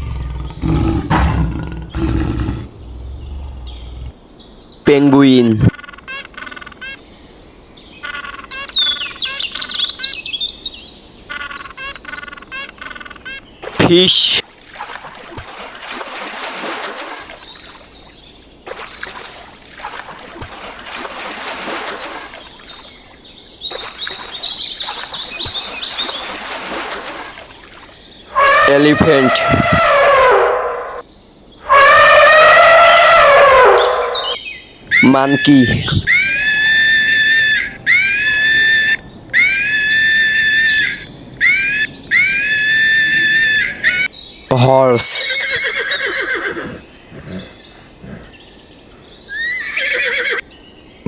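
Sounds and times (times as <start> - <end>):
small birds chirping: 0.0 - 14.1, 22.3 - 26.4, 27.4 - 51.0
water splashing and trickling: 14.4 - 28.2
monkey screeching: 28.3 - 31.0, 31.7 - 44.1.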